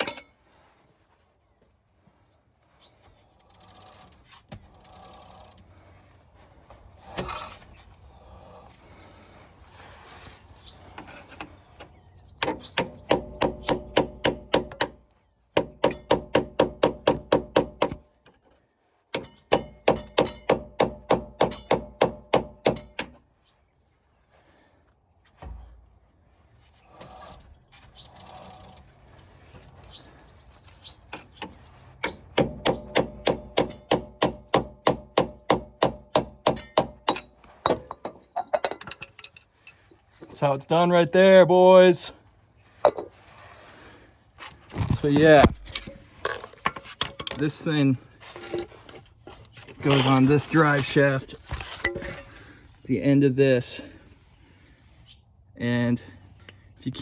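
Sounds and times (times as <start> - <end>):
hammer striking metal: 15.6 - 18.0, 19.2 - 23.2, 32.0 - 38.0.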